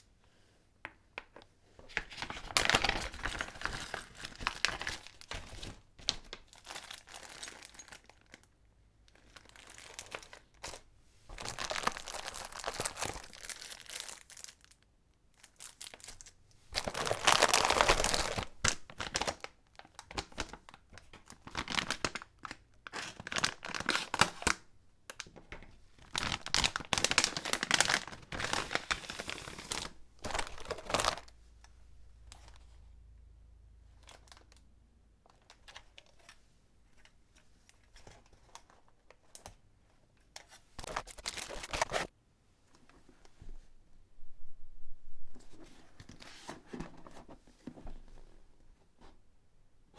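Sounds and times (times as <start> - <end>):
packaging crinkling and tearing: 11.3 - 14.8, 15.4 - 20.8, 21.4 - 31.3, 40.8 - 42.1.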